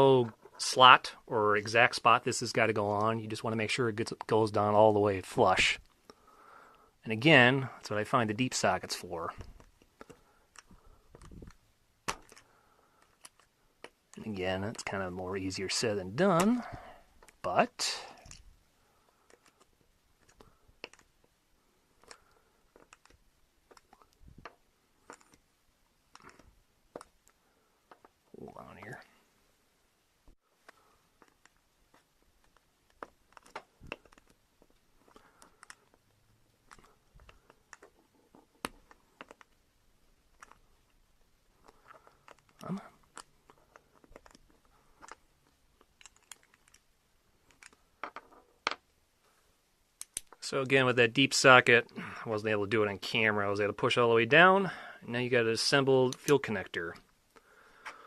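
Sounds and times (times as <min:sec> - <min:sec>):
small clicks and taps of parts: 0:09.3 - 0:15.0, 0:18.2 - 0:25.5, 0:26.1 - 0:28.2, 0:30.3 - 0:39.6, 0:40.3 - 0:41.0, 0:41.6 - 0:48.9, 0:50.0 - 0:50.8.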